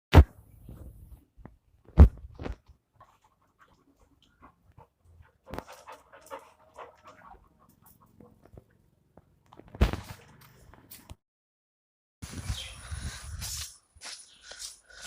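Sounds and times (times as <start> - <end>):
dog panting: 3.0 - 8.5.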